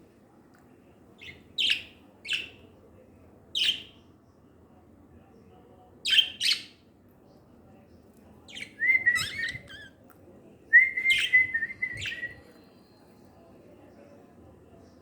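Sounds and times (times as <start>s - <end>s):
birds whistling: 1.2s - 2.6s, 8.5s - 10.0s, 10.8s - 12.6s
birds chirping: 1.2s - 2.7s, 3.5s - 4.0s, 6.0s - 6.9s, 8.4s - 10.0s, 10.8s - 13.2s.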